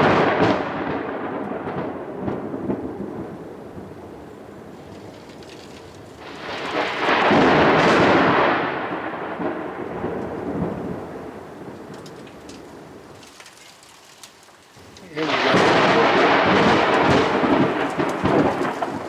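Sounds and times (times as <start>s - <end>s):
thunder clap and rumble: 0.0s - 13.3s, 14.8s - 19.0s
rain: 0.0s - 19.0s.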